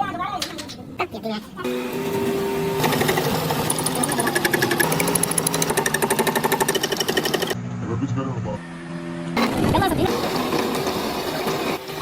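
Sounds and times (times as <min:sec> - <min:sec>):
steady machine hum: 0:01.6 - 0:07.8
mechanical hammering on metal: 0:02.8 - 0:07.6.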